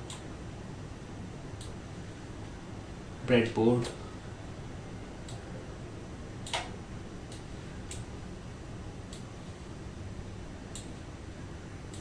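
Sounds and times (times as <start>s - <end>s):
low hiss: 0.0s - 12.0s.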